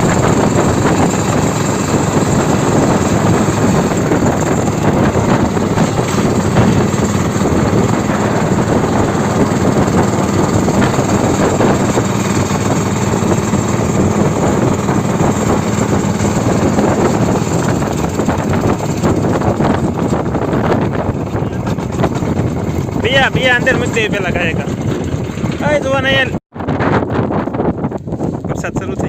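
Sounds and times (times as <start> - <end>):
motorcycle engine running: 0.0 - 28.9.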